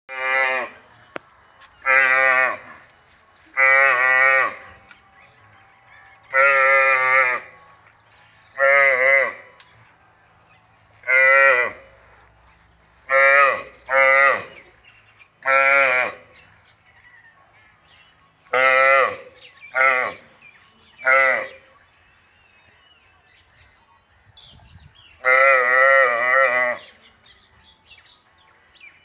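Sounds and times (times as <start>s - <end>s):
calf bawling: 8.6s - 9.5s.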